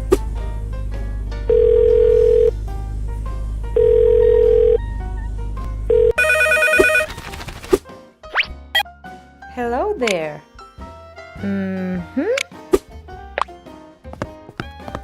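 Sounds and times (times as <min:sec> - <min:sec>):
low hum: 0:01.4 - 0:06.4
busy electronic ringing: 0:01.5 - 0:02.5, 0:03.8 - 0:04.8, 0:05.9 - 0:07.1
telephone ringing tone beep: 0:01.5 - 0:02.5, 0:03.8 - 0:04.8, 0:05.9 - 0:07.1.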